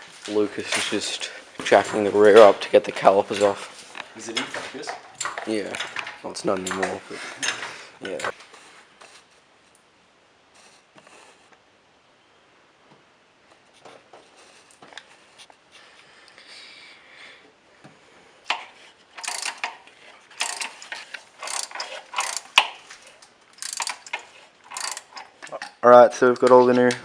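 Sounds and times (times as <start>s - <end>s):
ratcheting tool clicking: 18.5s - 25.8s.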